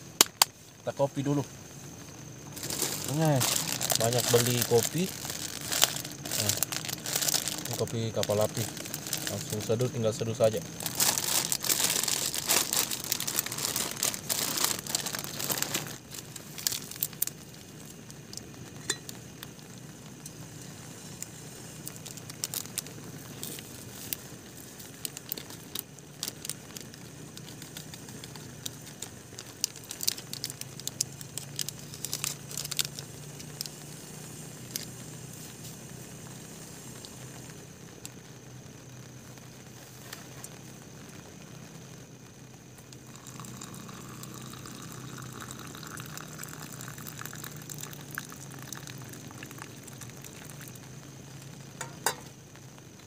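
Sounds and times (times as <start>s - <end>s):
rain hiss: 0.0s - 53.0s
plastic sachet crinkling: 2.5s - 19.5s, 21.8s - 33.9s, 43.1s - 50.8s, 51.8s - 52.4s.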